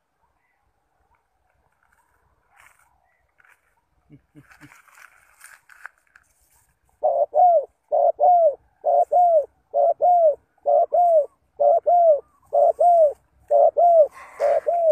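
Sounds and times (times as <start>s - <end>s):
dove cooing: 7.0s - 14.9s.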